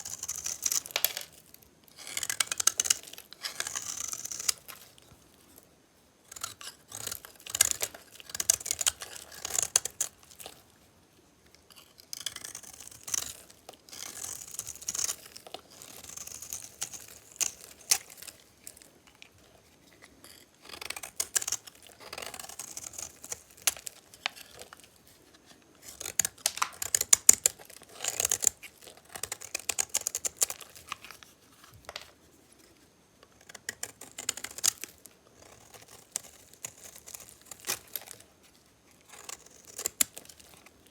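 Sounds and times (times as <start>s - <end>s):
blade cutting dry soap: 0.0s - 4.8s, 6.3s - 10.6s, 11.7s - 19.3s, 20.0s - 25.0s, 39.0s - 40.8s.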